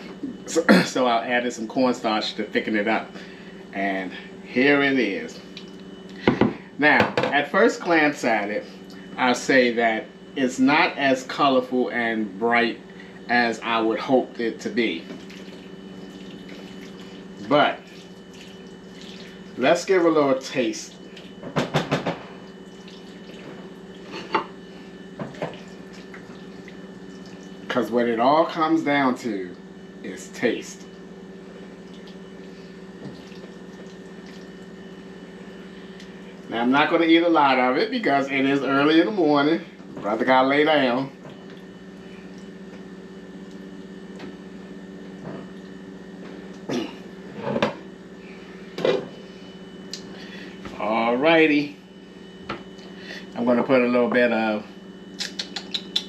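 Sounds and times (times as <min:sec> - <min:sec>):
low electrical hum: 0:00.0 - 0:56.0
man coughing: 0:00.3 - 0:01.1, 0:46.7 - 0:47.1.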